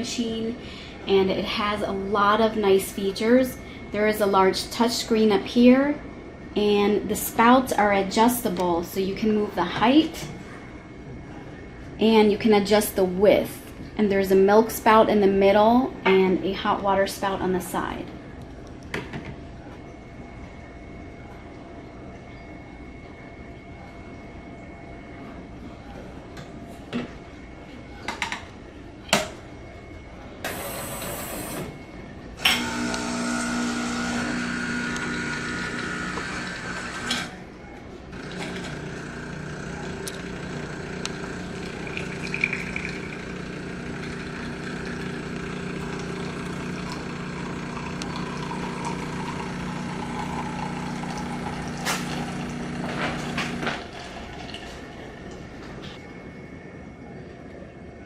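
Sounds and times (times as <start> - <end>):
pump humming: 32.4 - 37.4, 38.1 - 55.9
coffee grinder running: 32.5 - 37.3, 38.2 - 54.2.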